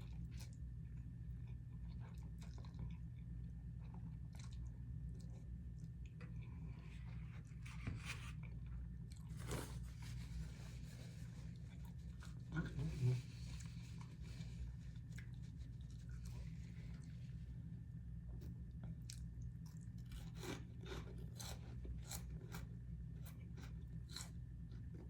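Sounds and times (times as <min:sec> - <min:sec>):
person chewing crunchy food: 0:00.0 - 0:07.5, 0:18.3 - 0:25.0
steady low hum: 0:00.0 - 0:25.0.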